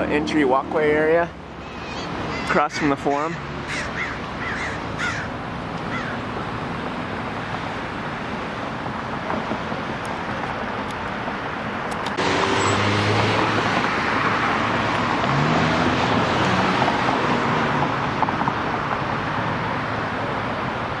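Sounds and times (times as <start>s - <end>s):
road traffic rushing: 0.0s - 21.0s.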